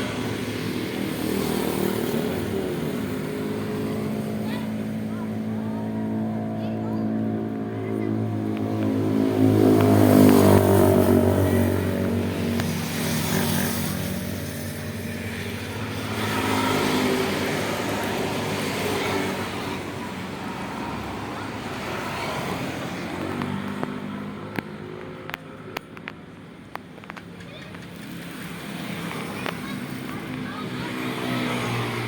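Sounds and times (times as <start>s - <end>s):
vehicle engine passing by: 0.0s - 24.9s.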